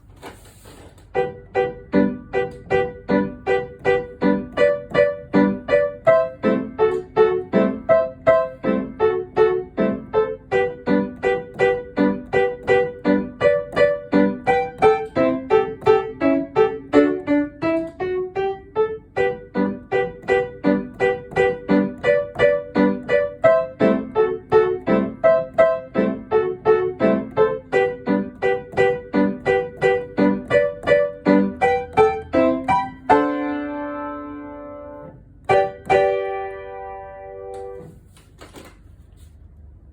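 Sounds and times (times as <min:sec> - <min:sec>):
solo piano piece: 0:01.0 - 0:38.0.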